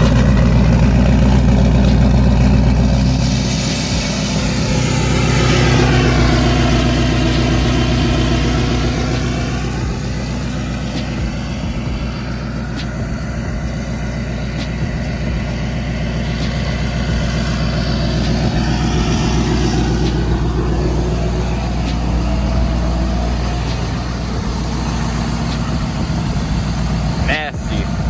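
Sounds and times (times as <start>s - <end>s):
diesel engine idling: 0.0s - 28.0s.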